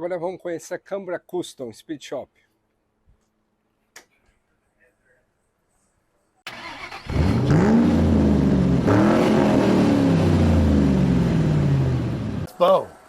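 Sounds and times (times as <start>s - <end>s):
car engine revving: 6.5s - 12.5s.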